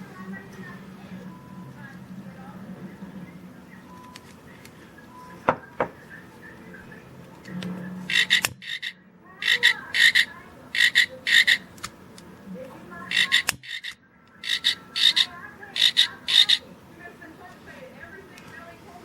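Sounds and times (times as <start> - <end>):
electronic frog croaks: 8.1 - 11.7, 13.1 - 16.7.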